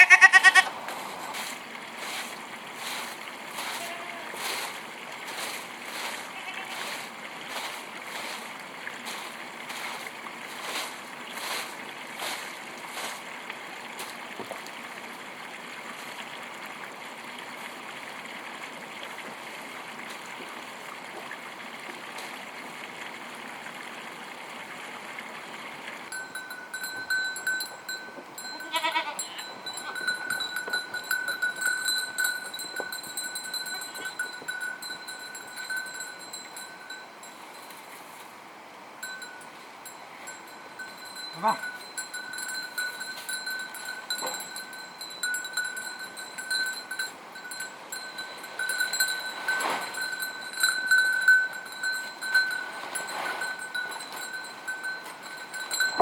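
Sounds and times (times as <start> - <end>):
goats bleating: 0.0 - 0.7, 3.8 - 4.4, 6.3 - 6.8, 28.5 - 30.0, 41.3 - 41.8.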